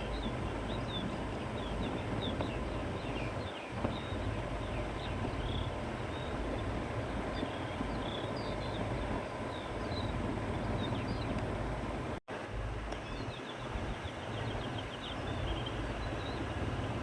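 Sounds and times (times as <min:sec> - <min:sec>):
small birds chirping: 0:00.0 - 0:11.6, 0:12.9 - 0:17.0
wind blowing: 0:00.0 - 0:17.0.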